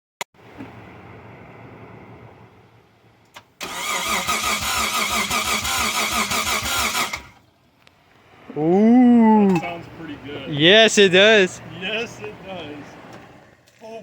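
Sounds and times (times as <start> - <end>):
engine cranking on starter: 3.3 - 7.5.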